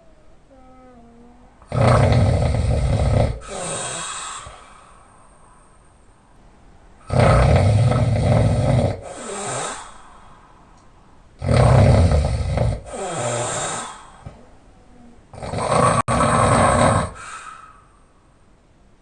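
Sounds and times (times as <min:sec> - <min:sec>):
person snoring loudly: 0:00.1 - 0:04.6, 0:07.0 - 0:10.0, 0:11.4 - 0:14.1, 0:14.9 - 0:17.5
quiet breath: 0:03.4 - 0:06.4, 0:09.0 - 0:11.1, 0:12.9 - 0:15.3, 0:17.1 - 0:18.5.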